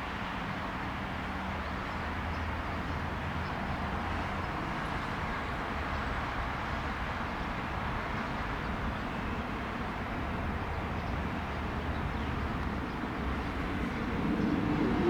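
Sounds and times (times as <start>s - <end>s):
jet engine noise: 13.0s - 15.0s.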